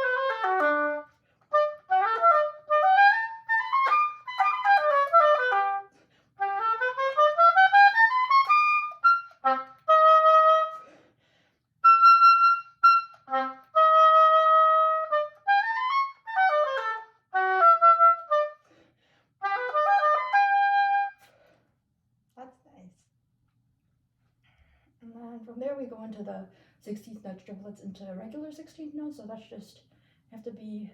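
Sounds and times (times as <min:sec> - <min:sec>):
solo oboe playing: 0:00.0 - 0:11.0, 0:11.8 - 0:18.6, 0:19.4 - 0:21.3.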